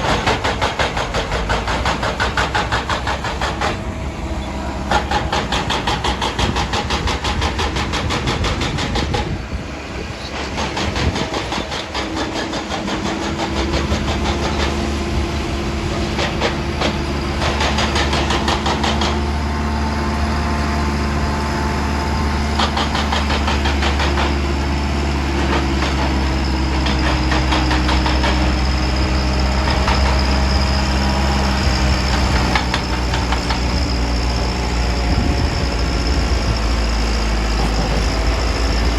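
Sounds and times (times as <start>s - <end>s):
rapid metallic clatter: 0.0s - 3.9s, 4.9s - 9.4s
heavy diesel engine rumble: 0.0s - 38.9s.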